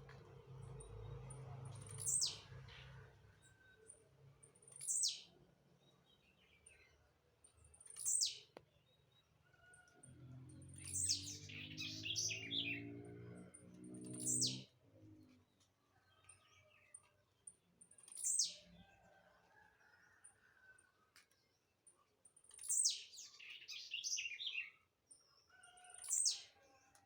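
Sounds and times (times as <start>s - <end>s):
bird chirps: 1.7s - 2.8s, 3.4s - 7.0s, 7.7s - 9.2s, 10.7s - 13.0s, 14.0s - 15.4s, 17.9s - 18.8s, 22.5s - 26.5s.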